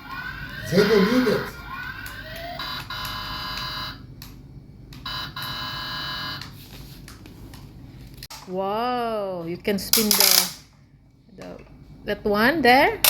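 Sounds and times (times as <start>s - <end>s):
electronic toy buzzing: 0.0s - 4.0s.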